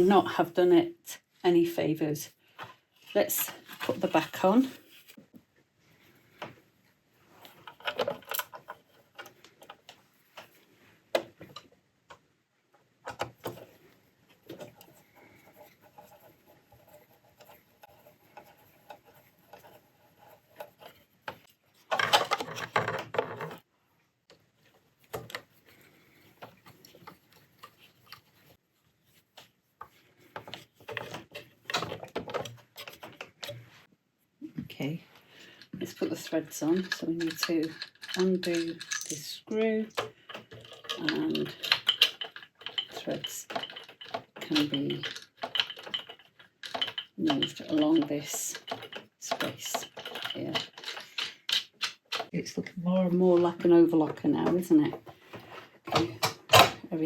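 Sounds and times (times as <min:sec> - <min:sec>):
rattling and scraping: 0:35.5 - 0:56.8.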